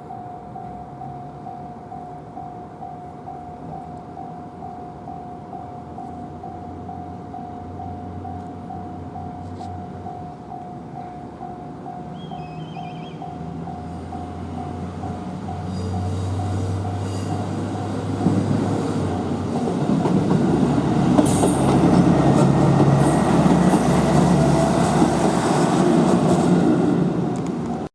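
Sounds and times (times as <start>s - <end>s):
train wheels clattering on rails: 10.9s - 27.9s.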